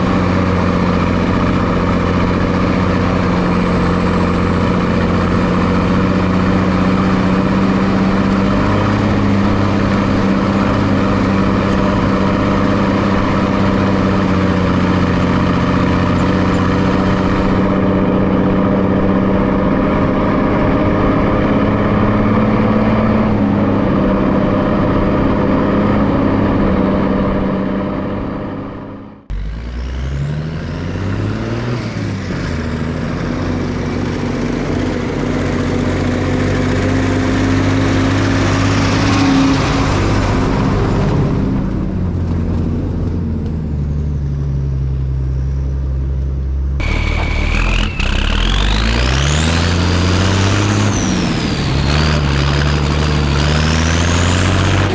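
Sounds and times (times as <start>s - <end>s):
truck diesel engine running: 0.0s - 54.9s
rising whine: 43.4s - 54.9s.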